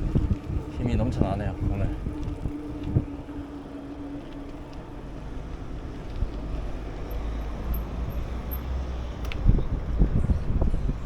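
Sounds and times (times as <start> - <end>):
wind noise on microphone: 0.0 - 4.1, 7.8 - 11.0
road rumble while riding: 0.0 - 11.0.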